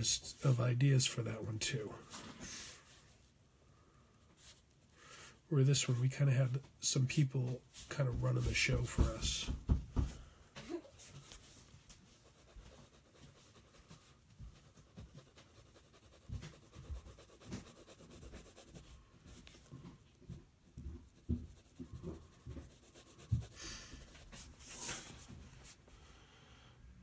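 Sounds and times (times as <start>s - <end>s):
pen scratching on paper: 12.1s - 19.7s, 21.0s - 25.8s.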